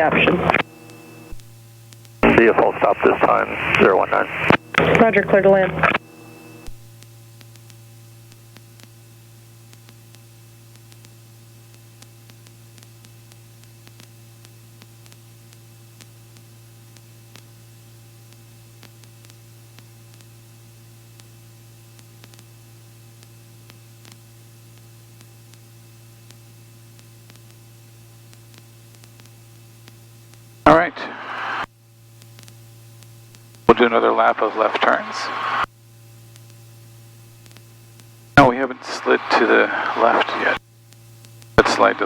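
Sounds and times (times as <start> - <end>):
low electrical hum: 0.0 - 42.0
steady hiss: 2.2 - 6.7, 30.7 - 31.7, 33.7 - 35.7, 38.4 - 40.6.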